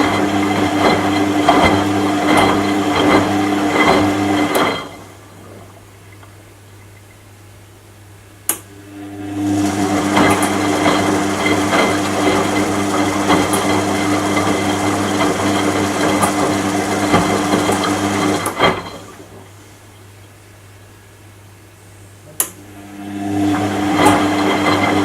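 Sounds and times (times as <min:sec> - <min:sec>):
washing machine motor humming: 0:00.0 - 0:25.0.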